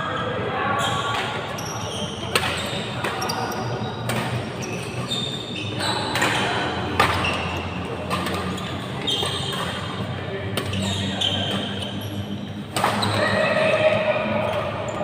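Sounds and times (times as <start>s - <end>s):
short high squeaks: 8.6s - 9.6s
ball hits echoing in hall: 12.6s - 14.8s.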